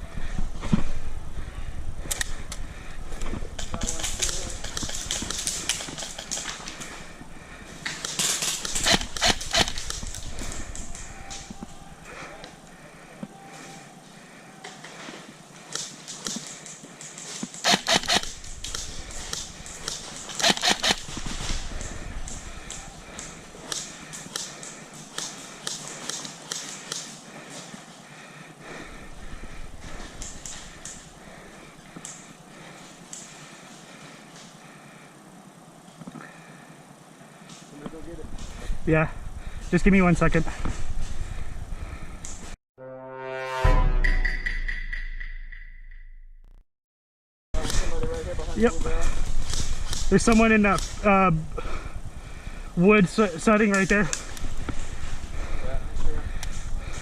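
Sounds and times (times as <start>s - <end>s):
sharp clicks: 2.0s - 2.6s, 3.6s - 6.9s, 7.8s - 11.7s, 15.7s - 27.1s
quick footsteps with rustle: 2.5s - 34.6s, 47.6s - 57.0s.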